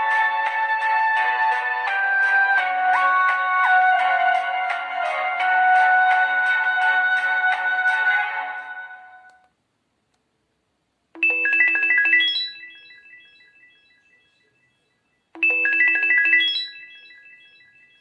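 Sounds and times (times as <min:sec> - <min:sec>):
mobile phone alert tone: 0:11.2 - 0:13.3, 0:15.4 - 0:18.0.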